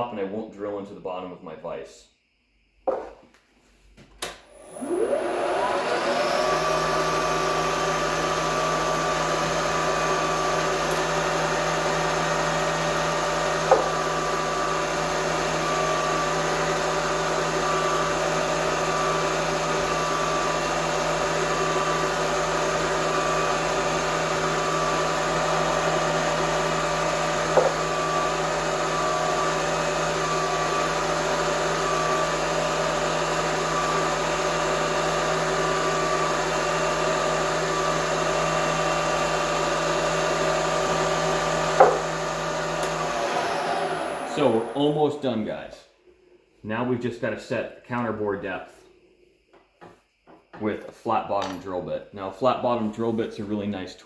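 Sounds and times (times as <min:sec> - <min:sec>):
milling spindle whining: 0:04.6 - 0:45.2.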